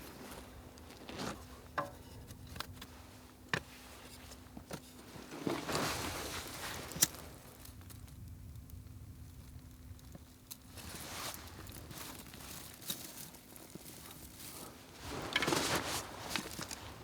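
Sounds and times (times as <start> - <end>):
rustling and crunching: 0.0 - 3.1, 3.8 - 7.6, 10.6 - 17.0.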